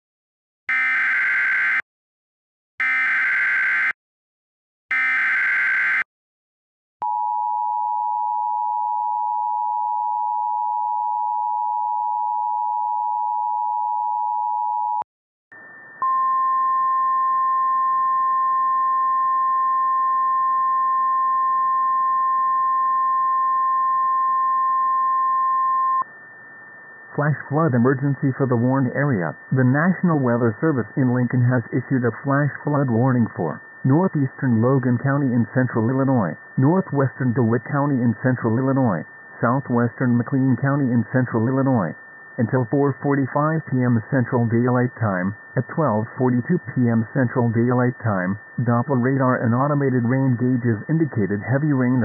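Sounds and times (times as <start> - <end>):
steady alarm tone: 0.7 - 1.8, 2.8 - 4.0, 4.9 - 6.1
radio hiss: 27.1 - 52.0
data tone bursts: 27.2 - 52.0.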